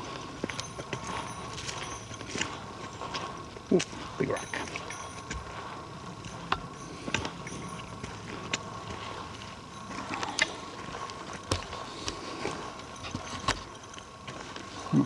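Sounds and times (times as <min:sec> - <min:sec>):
footsteps on rocks and forest litter: 0:06.2 - 0:15.0.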